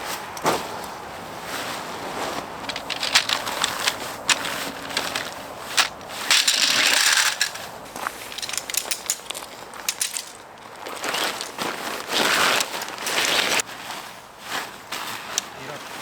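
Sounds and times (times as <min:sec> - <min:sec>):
crunching and rustling: 0:00.0 - 0:16.0.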